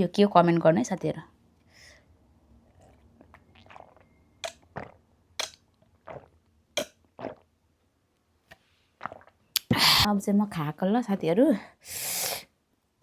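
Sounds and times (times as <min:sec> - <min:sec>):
wet mouth smacks and chewing: 0:03.2 - 0:07.4.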